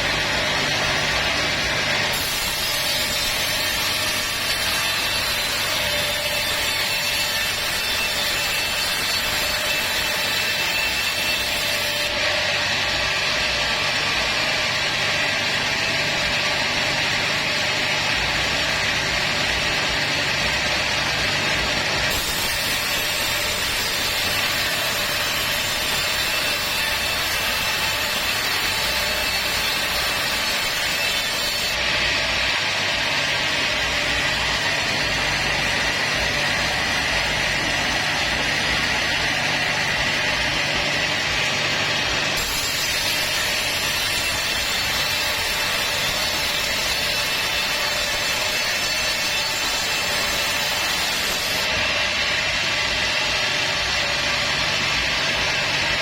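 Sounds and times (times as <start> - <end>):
sawmill saw cutting wood: 0.0 - 56.0.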